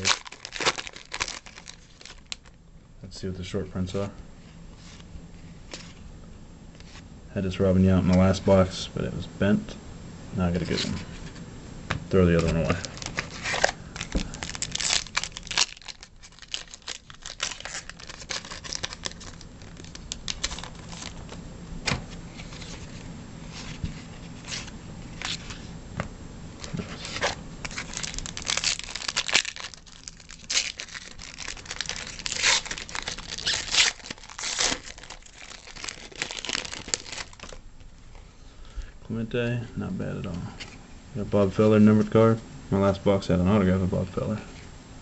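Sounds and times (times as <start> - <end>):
card pack wrapper tearing: 0.0 - 2.5, 12.3 - 21.4, 26.6 - 37.6
cards rustling: 0.0 - 2.5, 12.2 - 25.7, 26.6 - 37.6.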